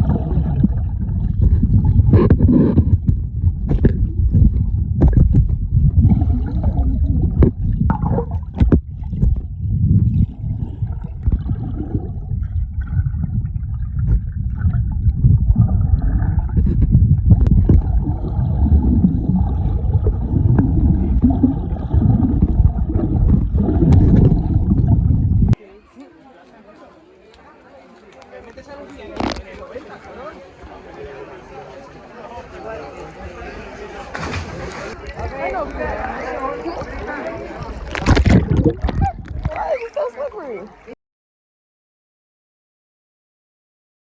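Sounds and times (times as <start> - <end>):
knocks and splashes: 0.0 - 25.6, 34.1 - 36.0, 37.6 - 40.5
water sloshing and gurgling: 0.0 - 25.6, 34.1 - 41.0.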